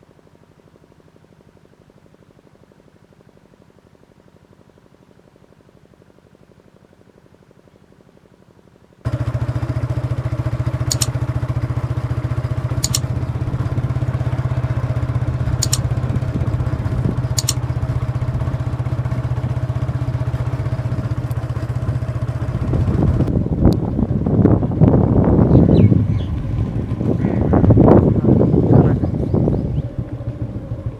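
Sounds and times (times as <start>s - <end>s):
engine running with low drone: 0.0s - 8.2s, 9.0s - 30.9s
sharp ticks: 10.4s - 18.3s.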